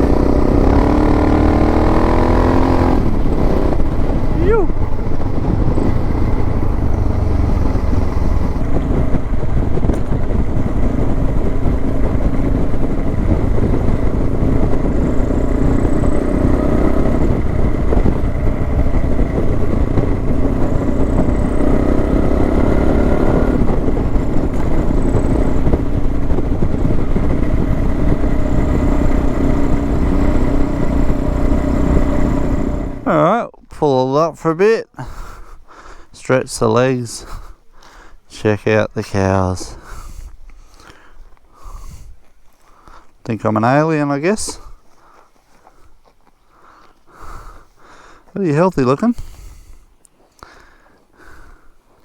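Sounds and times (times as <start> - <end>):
wind rush over microphone: 0.0 - 33.1, 39.3 - 42.3
motorcycle engine running: 0.0 - 33.5, 36.7 - 52.0.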